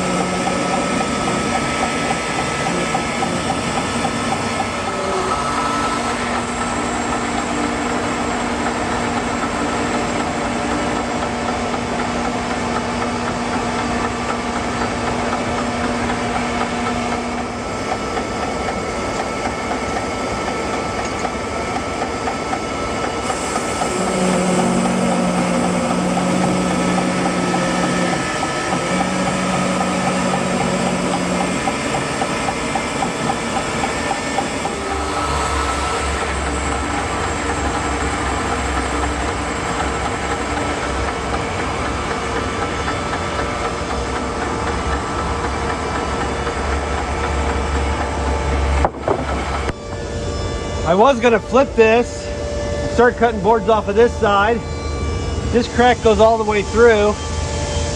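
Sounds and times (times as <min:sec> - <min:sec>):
sawmill sawing through log: 0:00.0 - 0:11.9, 0:15.4 - 0:45.3.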